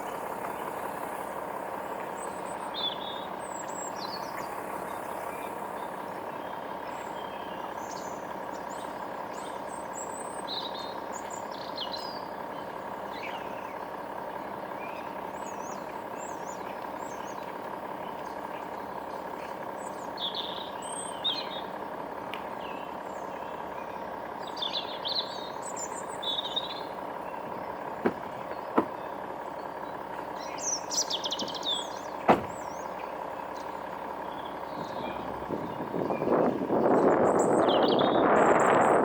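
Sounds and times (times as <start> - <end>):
small birds chirping: 0.0 - 39.0
steady mechanical hum: 12.1 - 39.0.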